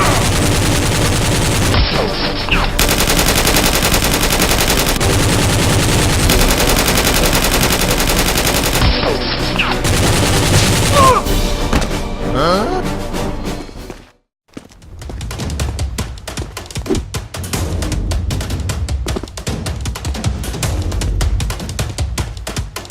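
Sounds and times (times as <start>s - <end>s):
rapid automatic gunfire: 0.0s - 11.2s.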